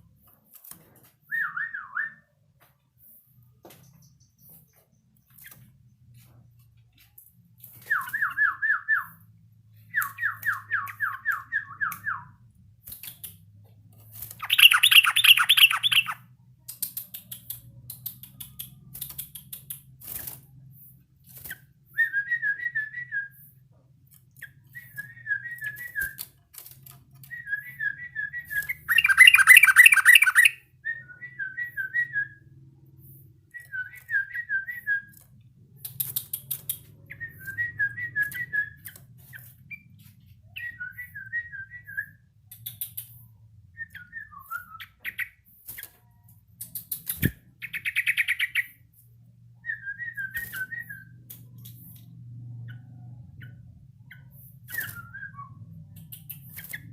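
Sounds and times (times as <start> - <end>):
bird whistled calls: 14.4 - 16.2, 27.4 - 32.2.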